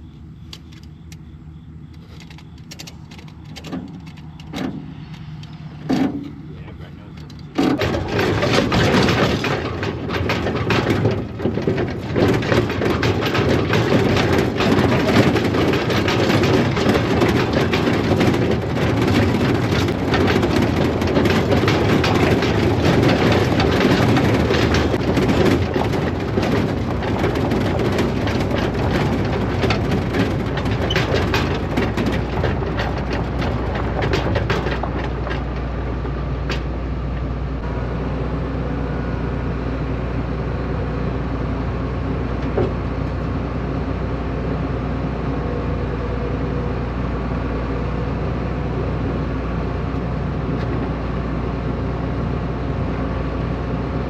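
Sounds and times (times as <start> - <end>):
combine harvester running: 0.0 - 54.0
rattling and crackling: 1.9 - 37.7.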